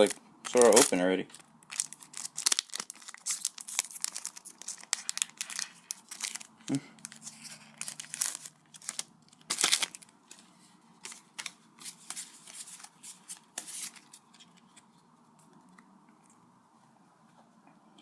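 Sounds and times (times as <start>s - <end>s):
foil wrapper crinkling: 0.0s - 10.2s.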